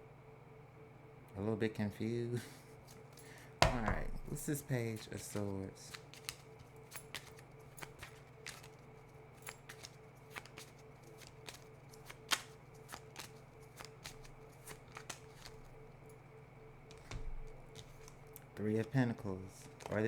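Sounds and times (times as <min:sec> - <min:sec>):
steady low hum: 0:00.0 - 0:20.0
cards clicking and tapping: 0:03.6 - 0:15.8, 0:16.8 - 0:20.0.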